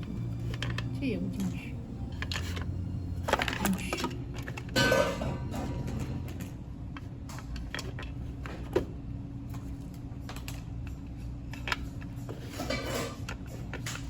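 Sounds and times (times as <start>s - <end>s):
low hum: 0.0s - 7.8s.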